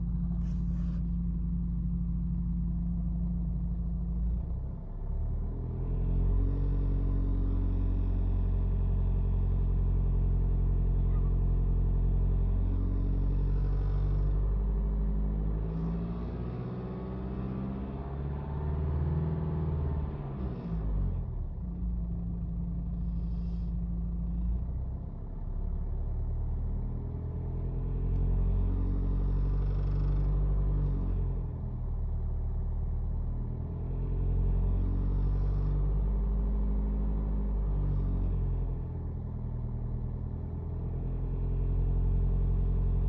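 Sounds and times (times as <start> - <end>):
car engine running: 0.0 - 6.8, 20.2 - 26.6, 28.0 - 36.5.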